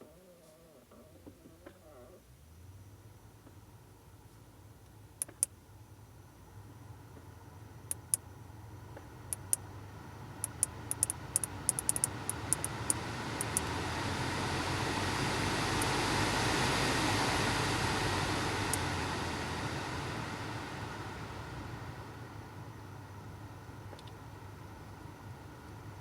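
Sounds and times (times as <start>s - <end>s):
car cabin noise: 1.2s - 5.6s, 6.6s - 26.0s
sharp clicks from dashboard: 4.8s - 5.6s, 7.9s - 8.3s, 8.9s - 9.7s, 10.4s - 13.8s, 23.9s - 24.2s.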